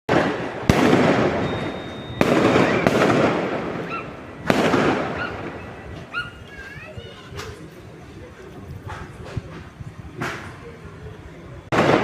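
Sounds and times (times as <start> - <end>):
loud bangs with rumble: 0.1 - 1.6, 2.2 - 6.0, 11.7 - 12.0.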